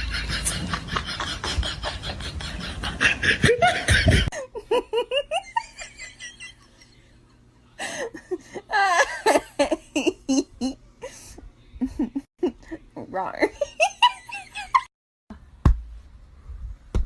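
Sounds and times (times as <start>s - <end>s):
person laughing: 0.0s - 6.9s.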